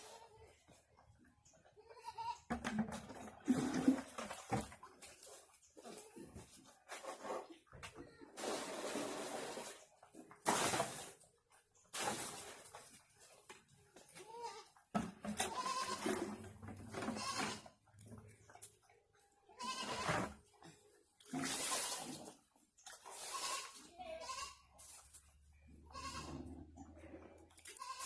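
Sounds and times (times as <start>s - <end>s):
animals bleating: 1.8s - 2.5s, 15.4s - 16.1s, 17.1s - 17.7s, 19.5s - 20.2s, 23.2s - 24.6s, 25.8s - 26.5s, 27.6s - 28.0s.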